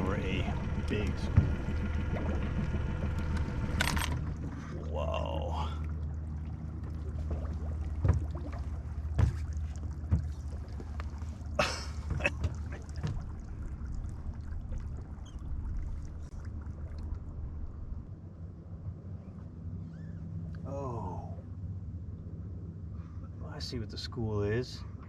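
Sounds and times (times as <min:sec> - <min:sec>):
boat motor humming: 0:00.0 - 0:23.4.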